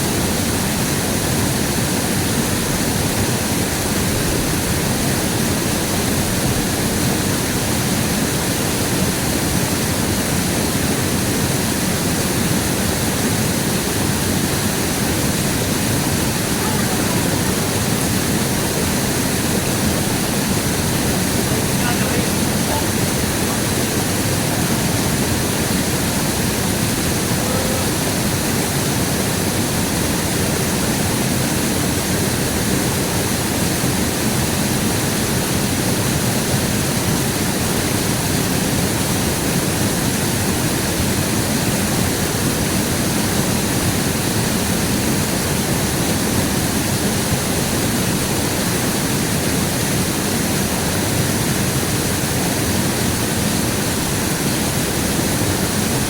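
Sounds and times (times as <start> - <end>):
river water rushing: 0.0 - 39.9.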